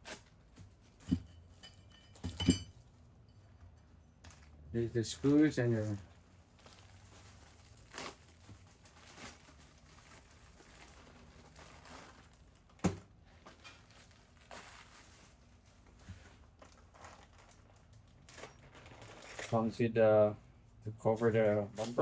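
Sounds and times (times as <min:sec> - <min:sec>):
plastic packaging crinkling: 0:04.2 - 0:19.8, 0:21.2 - 0:22.0.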